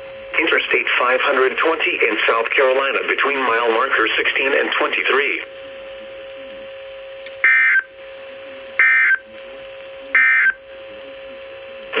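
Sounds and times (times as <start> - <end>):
steady low hum: 0.0 - 12.0
digital data tone bursts: 0.4 - 5.4, 10.2 - 10.6.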